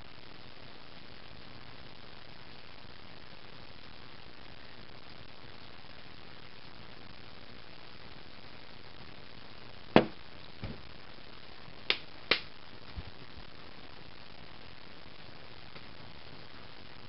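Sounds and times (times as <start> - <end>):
sharp knocks: 10.0 - 10.8
dull thumps: 10.0 - 10.9.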